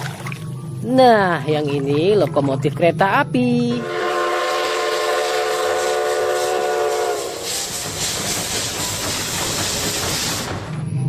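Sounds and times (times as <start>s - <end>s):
steam locomotive whistle: 3.8s - 10.6s
loud hiss of escaping steam: 3.9s - 10.7s.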